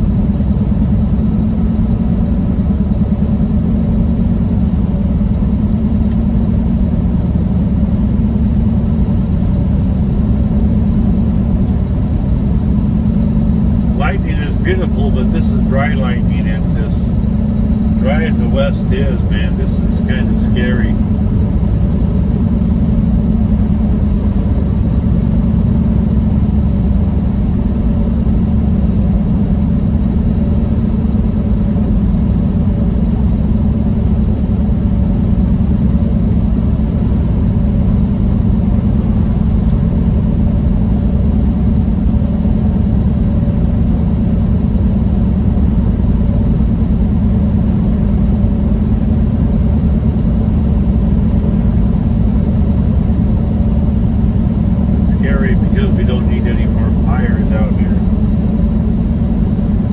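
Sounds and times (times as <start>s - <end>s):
truck diesel engine drone: 0.0s - 30.8s, 34.1s - 59.9s
road noise: 13.8s - 21.0s, 55.0s - 58.2s.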